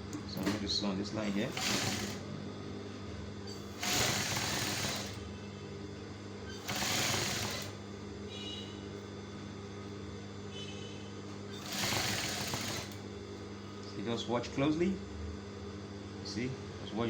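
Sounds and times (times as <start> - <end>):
sewing machine motor hum: 0.1 - 2.4, 3.5 - 5.3, 6.5 - 7.8, 11.5 - 13.1
sewing machine stitching: 1.3 - 2.2, 3.8 - 5.2, 6.6 - 7.8, 11.6 - 13.0.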